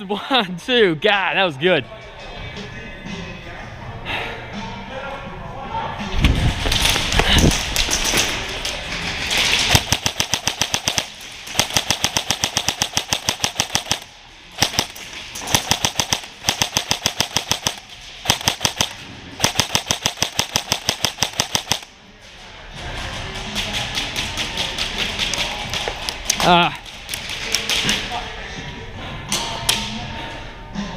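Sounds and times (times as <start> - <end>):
airsoft rifle firing: 9.5 - 21.9.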